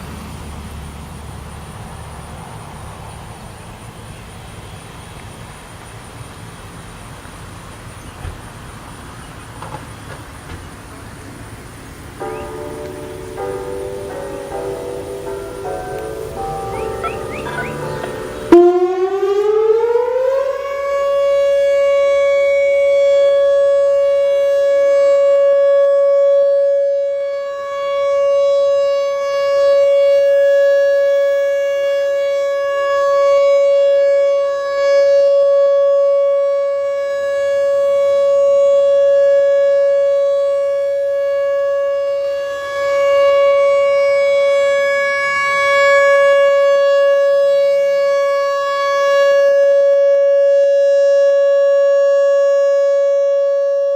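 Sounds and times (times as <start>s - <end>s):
outdoor warning siren tone: 12.1s - 53.9s.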